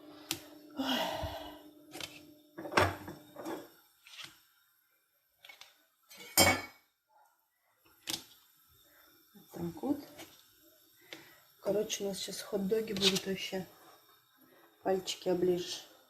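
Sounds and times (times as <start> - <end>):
dishes and utensils clattering: 6.1 - 6.8.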